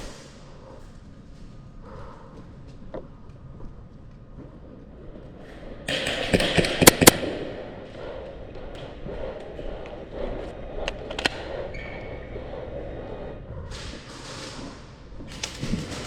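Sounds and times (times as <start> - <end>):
airsoft gun cracks: 5.9 - 8.1.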